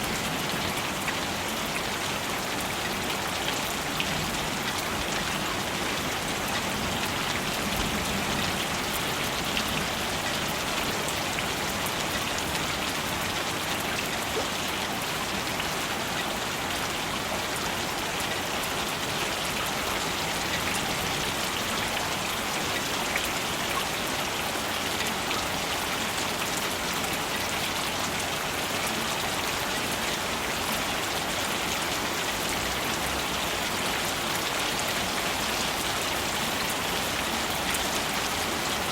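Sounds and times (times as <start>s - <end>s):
steady rain patter: 0.0s - 38.9s.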